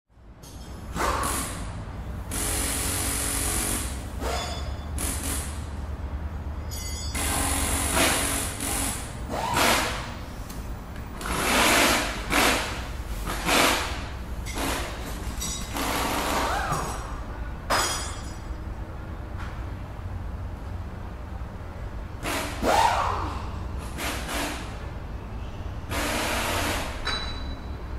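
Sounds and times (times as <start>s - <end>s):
noisy bursts of tool work: 0.4s - 5.8s, 6.5s - 10.3s, 11.1s - 17.3s, 22.2s - 24.9s, 25.9s - 27.9s.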